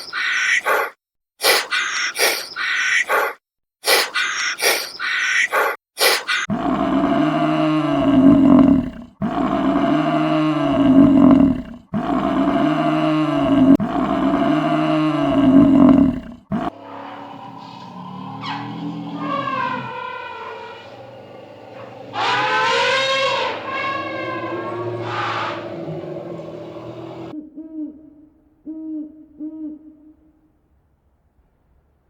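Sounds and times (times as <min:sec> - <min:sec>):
short sharp animal calls: 0:00.0 - 0:06.5
large animal roaring: 0:06.4 - 0:27.4.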